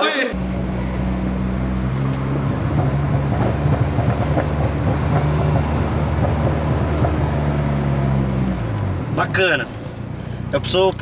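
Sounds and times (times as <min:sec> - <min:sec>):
car engine running: 0:00.3 - 0:11.0
light clicks and rattles: 0:10.8 - 0:11.0.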